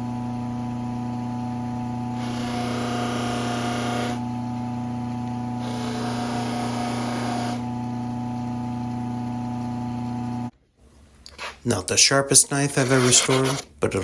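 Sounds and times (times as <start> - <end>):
bench power tool motor hum: 0.0 - 10.5, 12.7 - 13.7
knife blade grinding: 12.7 - 13.7.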